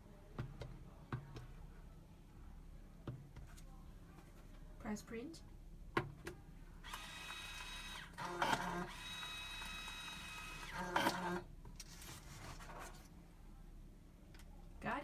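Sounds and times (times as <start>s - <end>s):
label printer whining: 6.9s - 11.4s.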